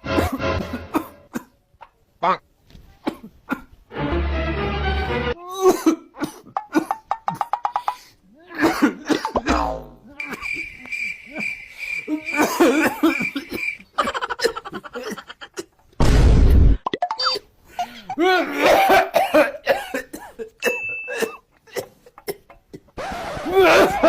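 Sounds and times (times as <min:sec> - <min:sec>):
person coughing: 0:00.1 - 0:01.5, 0:05.6 - 0:07.0, 0:08.6 - 0:10.4, 0:12.1 - 0:13.6, 0:18.2 - 0:22.5
brief tone: 0:20.6 - 0:21.4.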